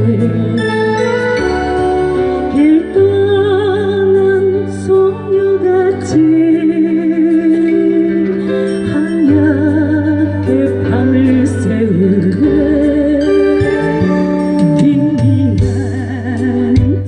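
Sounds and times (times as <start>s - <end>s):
melody with vibrato: 0.0s - 17.0s.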